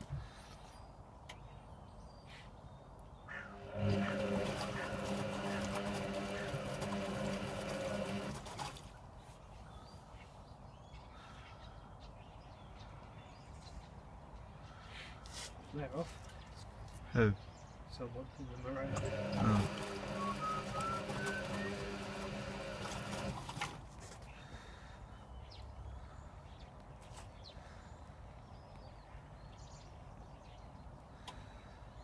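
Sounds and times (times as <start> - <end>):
washing machine motor hum: 3.4 - 8.8, 18.7 - 23.7.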